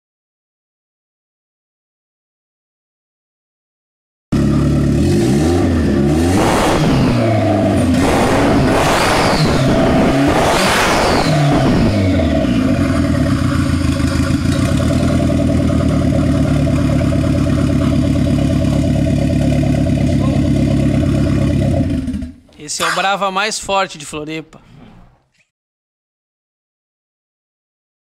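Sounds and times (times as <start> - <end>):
turbocharged car engine revving: 4.4 - 22.4.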